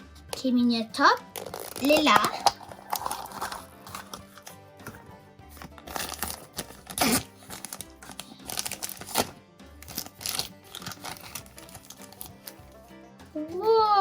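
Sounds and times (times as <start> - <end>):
background music: 0.0 - 14.0
plastic crinkling and clicking: 1.2 - 5.0, 5.6 - 12.4
plastic snaps: 1.2 - 5.0, 5.6 - 12.6.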